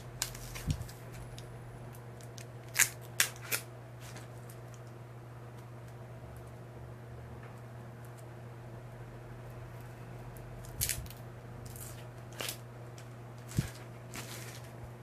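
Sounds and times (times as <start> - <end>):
steady low hum: 0.0 - 15.0
packaging rustling: 13.4 - 14.8.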